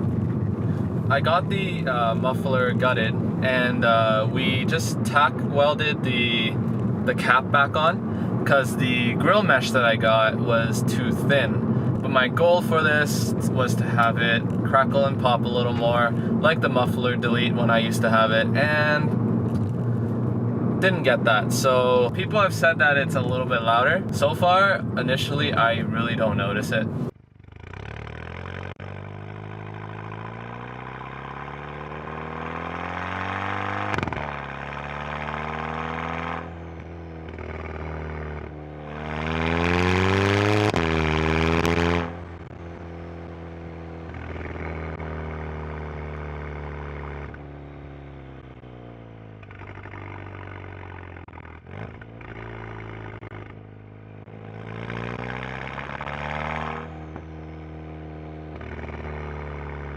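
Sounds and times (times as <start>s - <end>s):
car exhaust revving: 0.0s - 59.9s.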